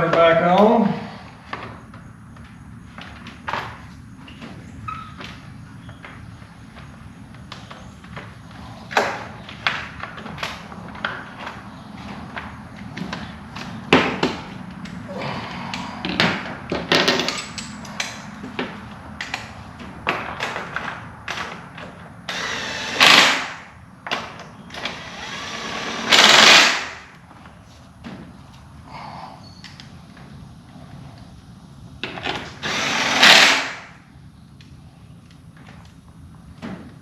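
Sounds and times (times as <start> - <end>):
tools and parts clattering: 16.8 - 18.3
hissing bursts: 22.3 - 23.7, 24.8 - 27.0, 32.6 - 33.9.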